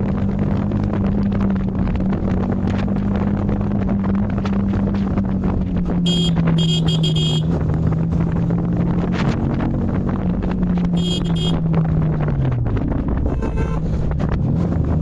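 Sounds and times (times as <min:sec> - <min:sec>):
motorcycle engine cruising: 0:00.0 - 0:15.0
wind noise on microphone: 0:00.0 - 0:15.0
vehicle horn beeps: 0:06.1 - 0:07.5, 0:10.9 - 0:11.6, 0:13.3 - 0:13.9.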